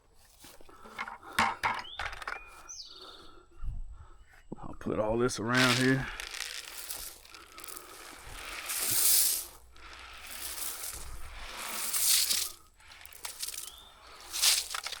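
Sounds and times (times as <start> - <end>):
granules pouring from a bag: 5.5 - 15.0.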